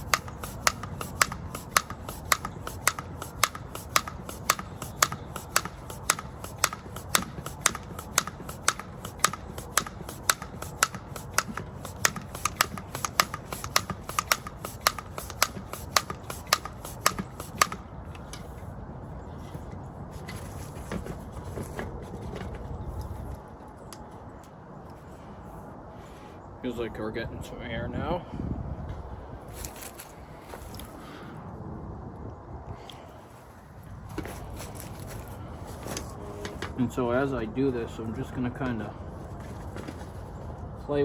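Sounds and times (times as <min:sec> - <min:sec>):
pump clicks: 0:00.0 - 0:18.5
hand tire pump strokes: 0:00.0 - 0:18.7, 0:19.4 - 0:22.4
handling noise: 0:00.0 - 0:18.8, 0:19.4 - 0:25.0, 0:33.9 - 0:36.8.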